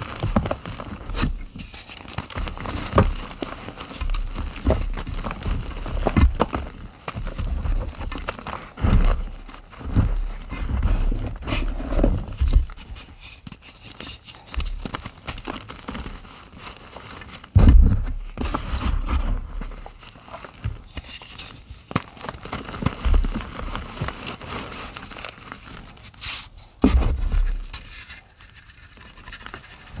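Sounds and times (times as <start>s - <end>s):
heavy thumps: 26.8s - 27.7s.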